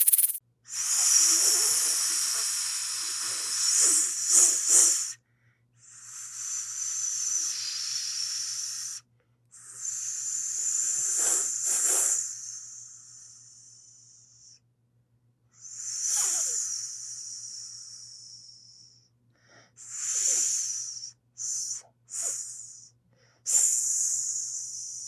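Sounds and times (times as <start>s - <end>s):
snake hissing: 0.0s - 0.4s.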